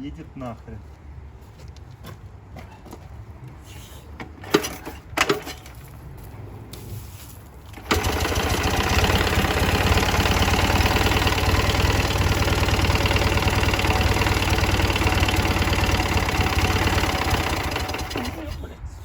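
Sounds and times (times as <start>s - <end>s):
motorcycle engine idling with knock: 7.9s - 18.1s.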